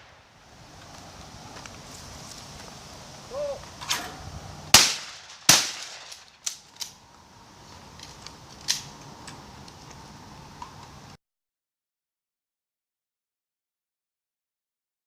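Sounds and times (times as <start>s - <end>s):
faint sharp cracks: 3.8s - 7.0s, 8.0s - 9.4s
shotgun shot: 3.9s - 6.4s.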